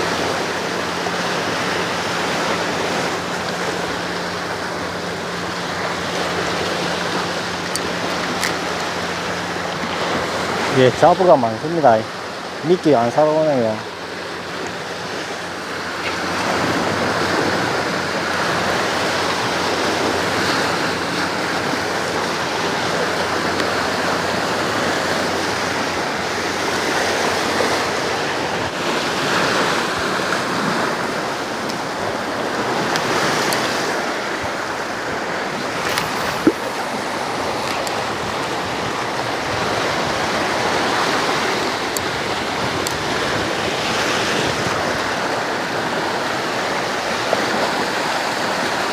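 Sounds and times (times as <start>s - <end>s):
sea waves washing on shore: 0.0s - 48.9s.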